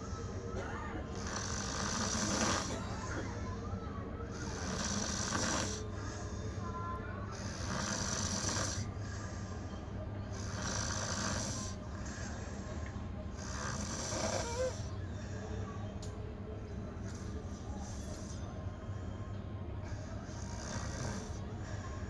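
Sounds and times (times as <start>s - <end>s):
person snoring: 1.2s - 3.1s, 4.3s - 6.2s, 7.3s - 9.3s, 10.4s - 11.8s, 13.4s - 14.9s, 20.3s - 21.4s.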